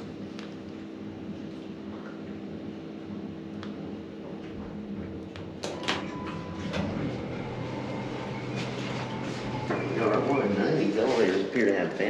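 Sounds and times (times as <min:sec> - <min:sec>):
elevator mechanical hum: 0:00.0 - 0:12.0.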